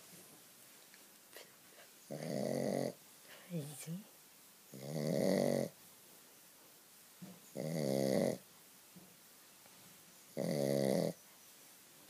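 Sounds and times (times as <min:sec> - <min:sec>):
dog snoring loud: 0:02.1 - 0:03.0, 0:04.7 - 0:05.8, 0:07.5 - 0:08.4, 0:10.3 - 0:11.2.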